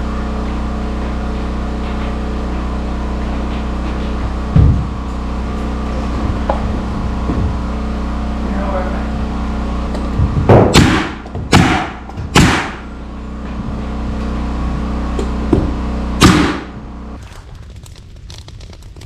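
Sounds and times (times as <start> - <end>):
steady low hum: 0.0 - 19.0
hammer striking wood: 10.5 - 12.8.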